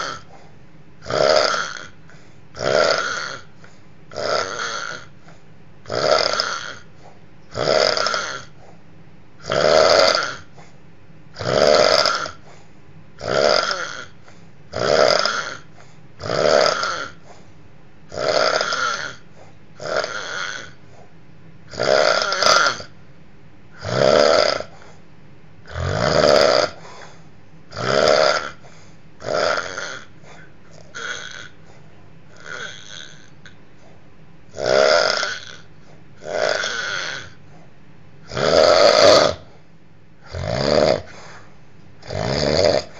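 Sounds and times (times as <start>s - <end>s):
person snoring: 0.0s - 0.3s, 1.0s - 2.0s, 2.6s - 5.2s, 5.9s - 6.9s, 7.5s - 8.6s, 9.4s - 10.6s, 11.4s - 12.5s, 13.2s - 17.2s, 18.1s - 19.2s, 19.8s - 20.8s, 21.7s - 22.9s, 23.8s - 25.0s, 25.7s - 31.6s, 32.3s - 33.6s, 34.5s - 37.4s, 38.3s - 39.5s, 40.2s - 42.9s.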